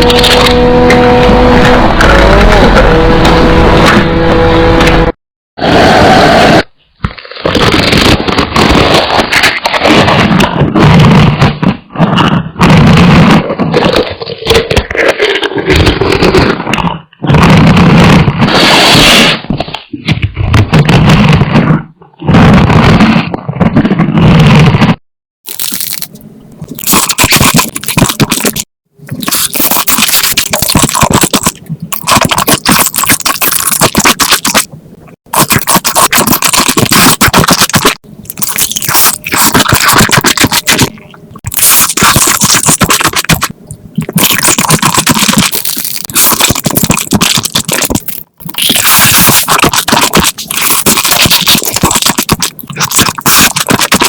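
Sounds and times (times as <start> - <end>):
crunching and chewing crisp food: 12.2 - 18.6, 25.5 - 34.6, 35.3 - 54.0.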